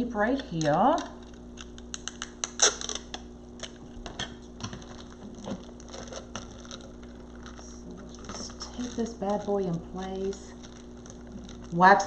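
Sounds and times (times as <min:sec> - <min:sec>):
faint steady hum: 0:00.0 - 0:12.0
plastic bag and tape handling: 0:00.0 - 0:12.0.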